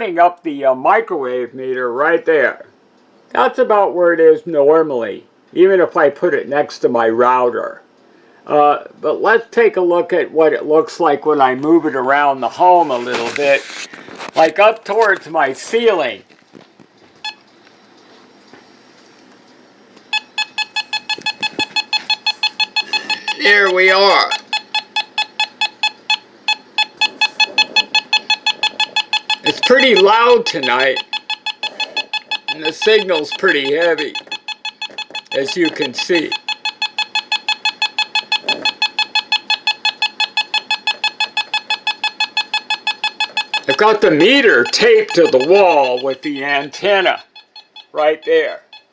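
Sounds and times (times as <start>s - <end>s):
meter beeping rapidly: 20.1s - 48.9s.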